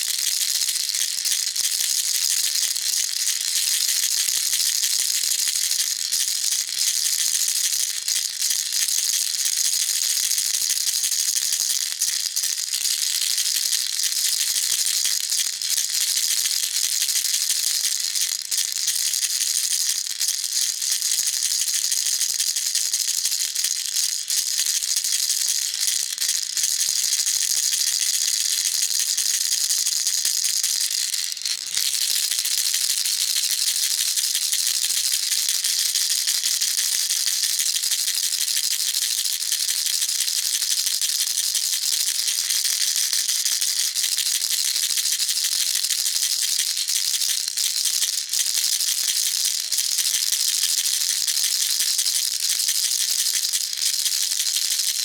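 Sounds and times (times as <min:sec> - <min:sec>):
baby rattle shaken: 0:27.2 - 0:42.9.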